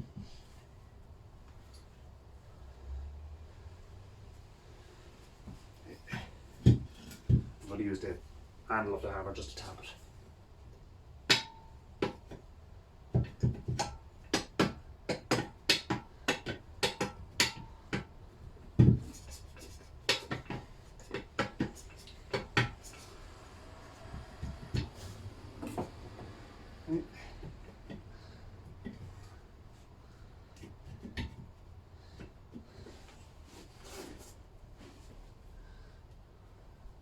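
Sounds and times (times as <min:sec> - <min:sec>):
hammer handle tapping metal: 0:13.2 - 0:18.1.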